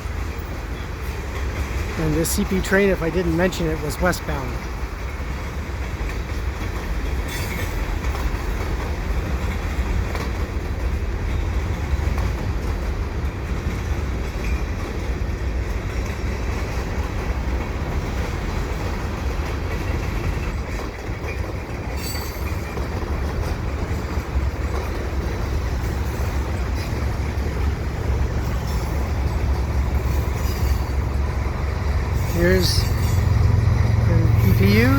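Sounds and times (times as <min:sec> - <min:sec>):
clickety-clack over rail joints: 0:00.0 - 0:34.9
freight train wheels rumbling: 0:00.0 - 0:34.9.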